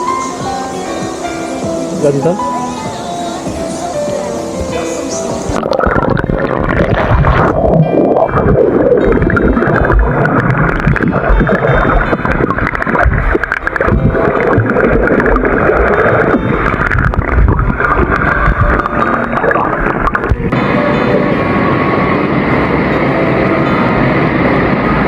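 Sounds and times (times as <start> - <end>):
rushing gurgling water: 0.0 - 25.0
low rumble: 5.5 - 25.0.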